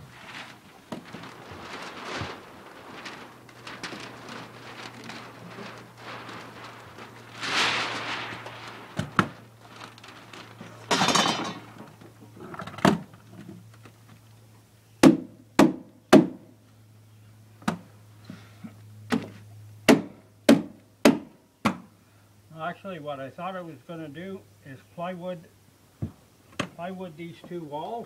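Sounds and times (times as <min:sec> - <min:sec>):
scraping sliding noises: 0:00.0 - 0:12.7.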